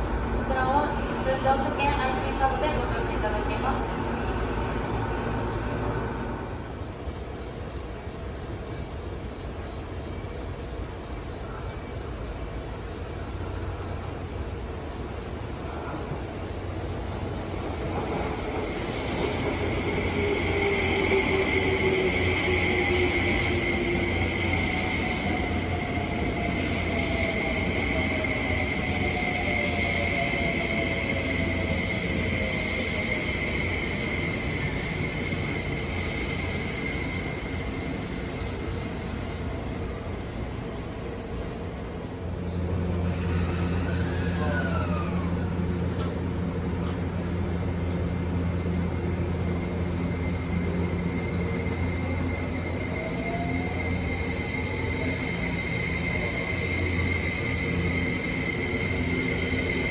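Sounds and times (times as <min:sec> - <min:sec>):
train wheels on rails and motor rumble: 0:00.0 - 0:59.9
electric train motors accelerating: 0:43.0 - 0:59.9.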